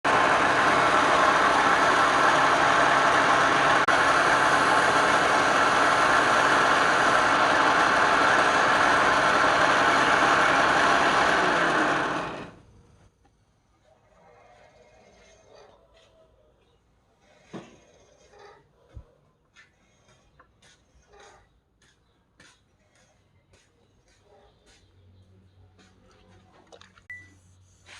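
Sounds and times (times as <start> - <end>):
wood lathe running: 0.0 - 12.6.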